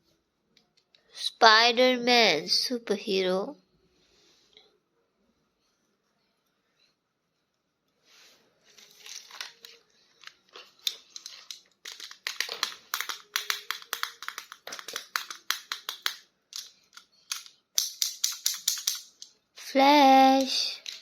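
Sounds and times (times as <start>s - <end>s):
plastic packaging crinkling: 8.7s - 16.1s.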